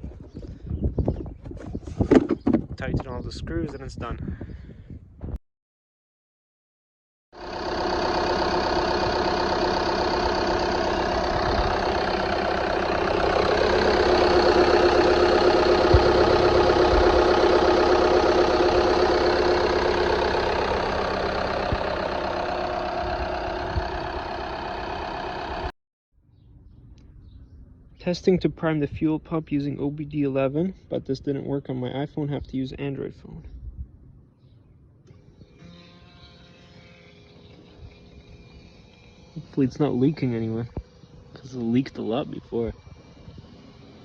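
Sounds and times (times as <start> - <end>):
diesel engine idling: 7.4 - 25.7.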